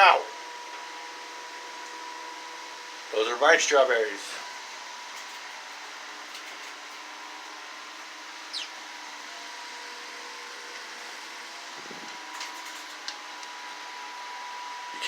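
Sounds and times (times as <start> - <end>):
fan-like hiss: 0.0 - 15.0
faint hum: 0.1 - 15.0
high falling chirp: 8.4 - 8.8.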